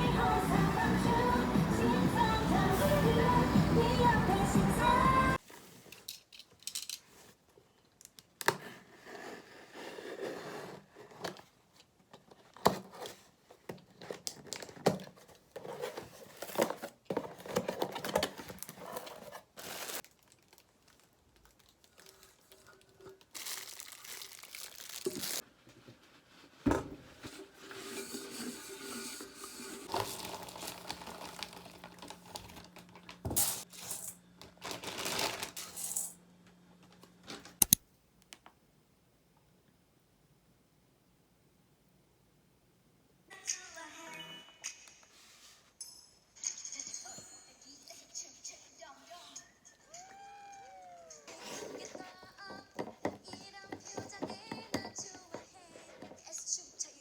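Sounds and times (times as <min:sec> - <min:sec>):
packaging rustling and crinkling: 0:13.9 - 0:25.4, 0:29.8 - 0:33.2, 0:33.8 - 0:35.8.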